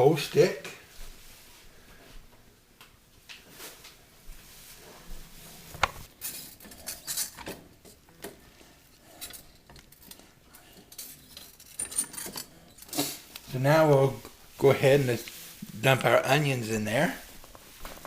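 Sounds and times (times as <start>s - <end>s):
utensils clinking on pots and dishes: 6.1s - 8.4s, 9.0s - 13.2s.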